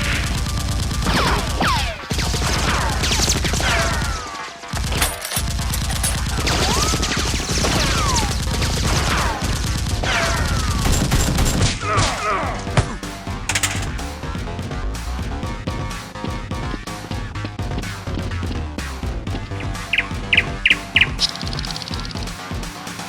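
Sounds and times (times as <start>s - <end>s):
blaster gunfire: 0.0s - 4.2s, 4.8s - 11.8s, 19.6s - 22.2s
faint background music: 0.0s - 23.0s.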